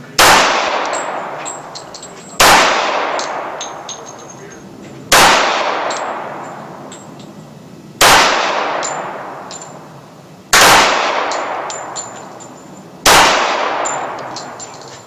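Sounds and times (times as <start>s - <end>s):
pistol shots echoing: 0.1s - 4.5s, 5.1s - 7.2s, 8.0s - 14.8s
light metallic clinks: 0.8s - 2.4s, 3.1s - 5.1s, 5.8s - 7.7s, 8.7s - 10.2s, 11.2s - 13.0s, 13.6s - 15.0s.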